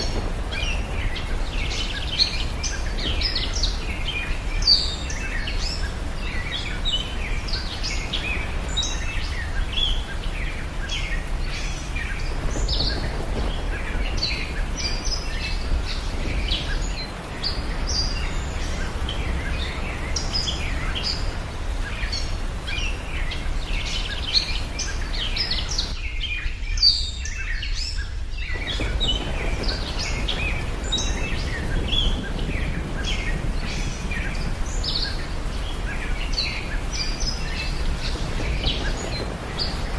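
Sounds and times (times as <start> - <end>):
small birds chirping: 0.0 - 39.9
low outdoor rumble: 28.3 - 39.9.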